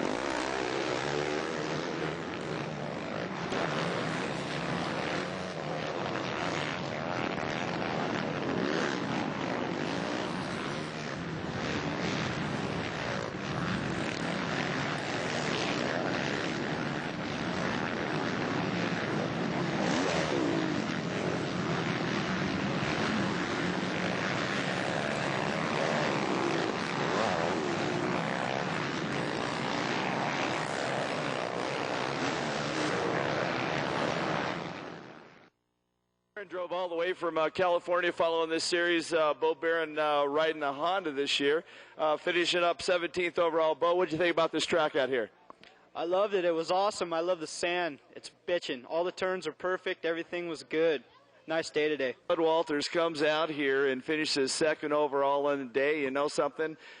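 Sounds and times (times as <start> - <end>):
motorcycle engines revving: 0.0 - 35.4.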